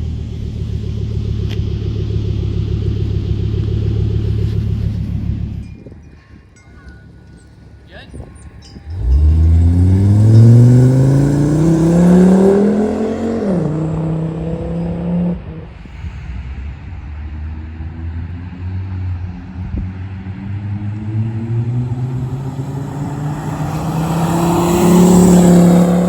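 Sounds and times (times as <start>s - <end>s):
engine low drone: 0.0s - 26.0s
car engine accelerating hard: 8.8s - 26.0s.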